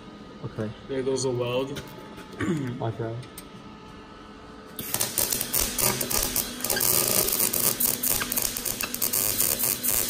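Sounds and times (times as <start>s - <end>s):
welding arc crackling: 4.8s - 10.0s.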